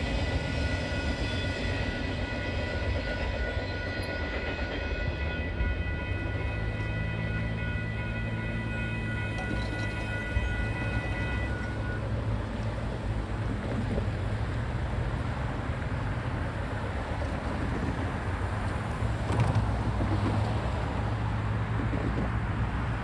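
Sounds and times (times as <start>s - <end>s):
locomotive horn chord: 0.0s - 12.6s
freight train rumbling on rails: 0.0s - 23.0s.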